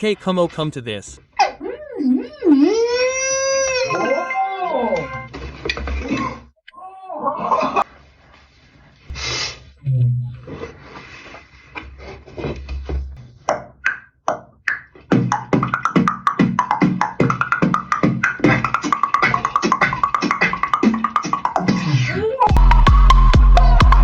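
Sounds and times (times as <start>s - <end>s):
beatboxing: 14.7s - 24.0s.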